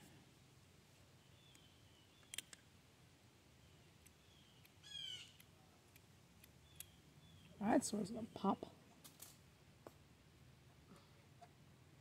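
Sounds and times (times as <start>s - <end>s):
faint bird call: 4.3s - 5.4s.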